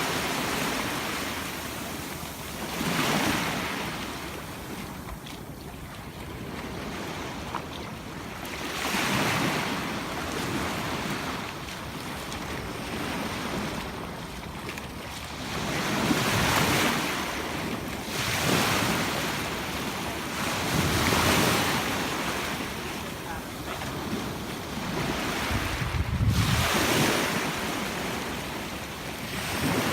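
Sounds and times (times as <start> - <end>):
waves breaking on beach: 0.0 - 29.9
wind rumbling on microphone: 22.6 - 29.9.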